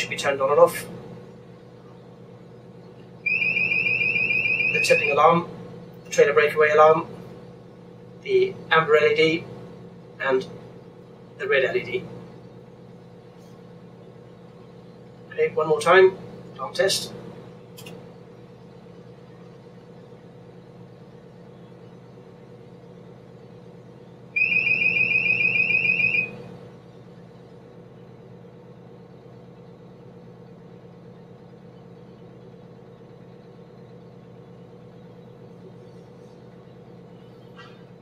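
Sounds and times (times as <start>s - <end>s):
steady low hum: 0.0s - 38.0s
high-pitched electronic alarm beeping: 3.3s - 5.2s, 24.4s - 26.5s.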